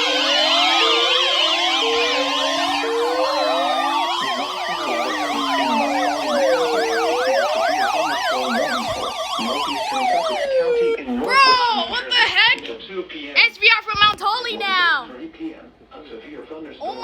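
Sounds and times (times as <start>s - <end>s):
emergency vehicle sirens: 0.0s - 11.9s.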